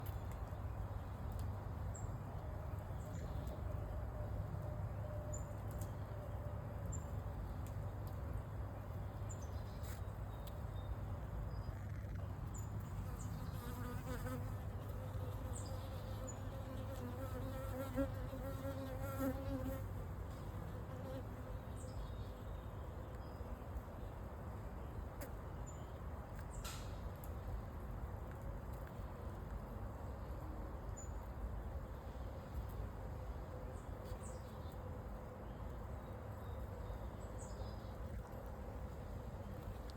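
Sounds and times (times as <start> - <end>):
single bee buzzing close by: 13.1 - 19.9.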